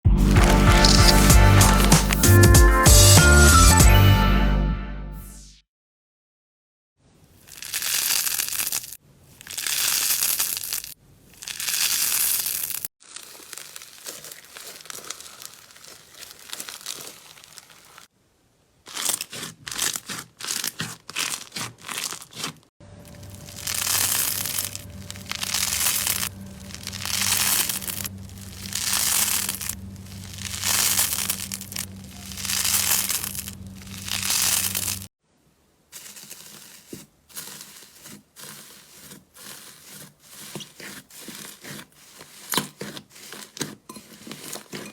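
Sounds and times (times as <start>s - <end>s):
slime squelching and crackling: 0.2s - 2.4s, 7.3s - 18.1s, 18.8s - 35.1s, 35.9s - 44.9s
low steady hum: 22.8s - 35.9s.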